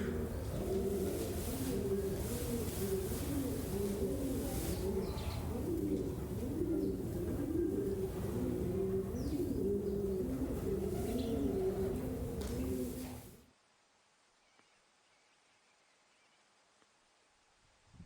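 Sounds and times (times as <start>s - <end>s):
birds cooing: 0.0s - 13.4s.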